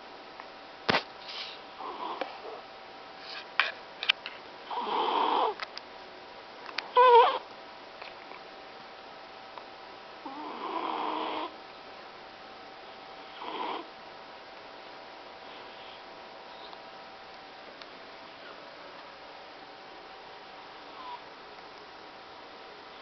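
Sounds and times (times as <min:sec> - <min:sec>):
cat snoring: 0:01.8 - 0:02.2, 0:04.7 - 0:05.6, 0:06.9 - 0:07.4, 0:10.2 - 0:11.6, 0:13.2 - 0:13.9.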